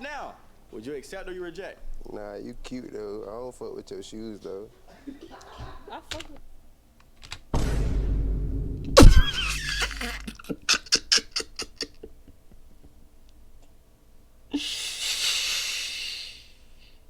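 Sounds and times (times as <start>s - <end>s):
man bursting out laughing: 9.0s - 12.2s.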